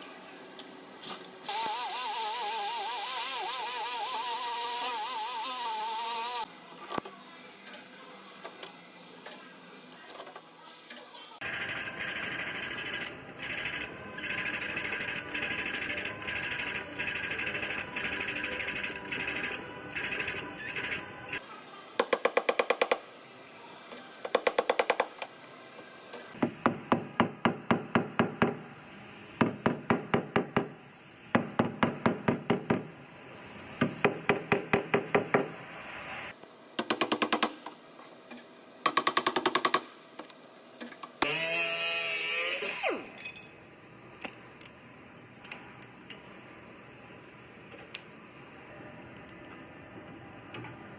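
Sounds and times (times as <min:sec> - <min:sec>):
power tool winding down: 0:01.5 - 0:06.5, 0:41.2 - 0:43.0.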